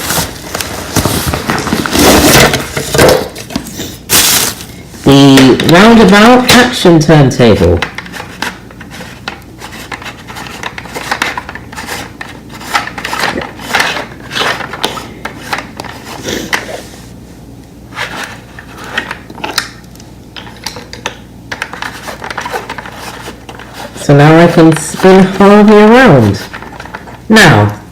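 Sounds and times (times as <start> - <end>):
plastic toy rubbing and clicking: 7.9 - 16.2, 21.5 - 27.2.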